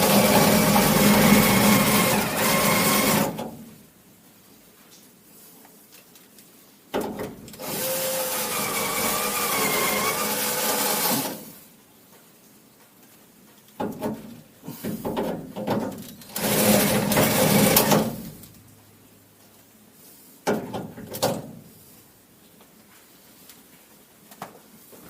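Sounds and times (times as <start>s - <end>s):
electric drill running under load: 0.0s - 3.4s, 7.6s - 11.6s, 16.3s - 17.9s.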